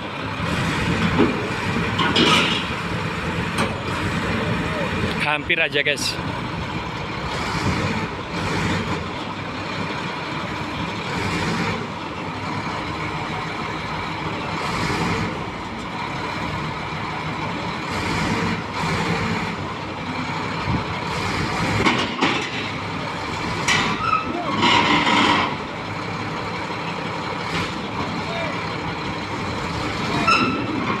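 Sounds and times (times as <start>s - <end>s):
bulldozer diesel engine running: 0.0s - 31.0s.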